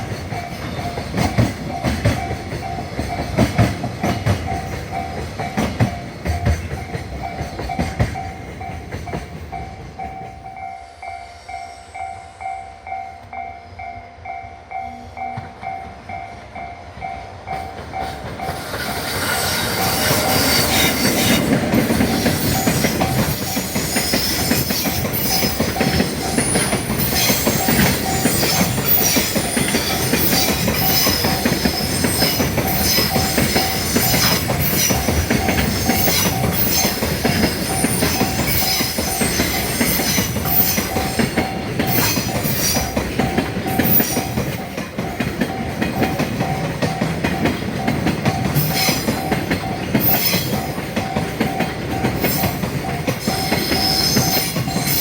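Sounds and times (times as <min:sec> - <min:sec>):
train wheels clacking over rails: 0:00.0 - 0:10.8, 0:17.0 - 0:55.0
crossing warning bell ringing: 0:00.0 - 0:55.0
wheel squeal: 0:18.6 - 0:43.0, 0:50.0 - 0:50.8, 0:53.2 - 0:55.0.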